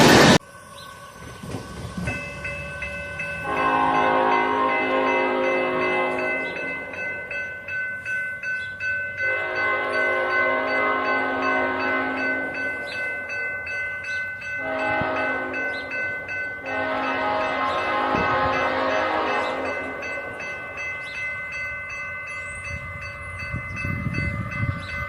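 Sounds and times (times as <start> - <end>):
locomotive air horn chord: 3.4 - 7.0, 9.2 - 12.7, 14.6 - 16.0, 16.6 - 20.4
bell ringing rapidly: 18.4 - 25.0.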